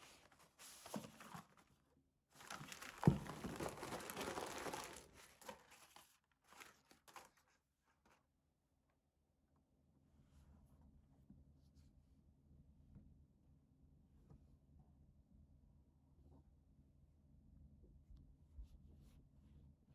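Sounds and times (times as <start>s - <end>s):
packaging crinkling and rustling: 0.0s - 1.7s, 2.4s - 8.2s.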